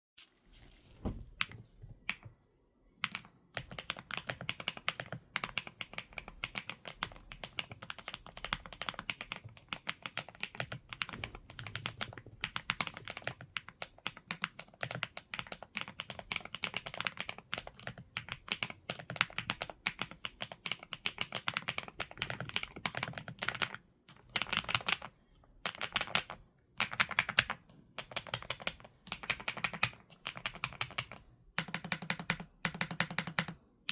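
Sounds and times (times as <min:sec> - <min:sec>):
mechanical keyboard typing: 0:03.0 - 0:33.9.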